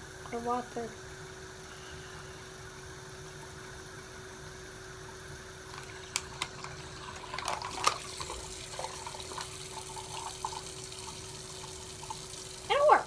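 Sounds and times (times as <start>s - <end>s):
tap water running into plastic bottle: 5.6s - 13.0s
water draining out: 5.6s - 13.0s.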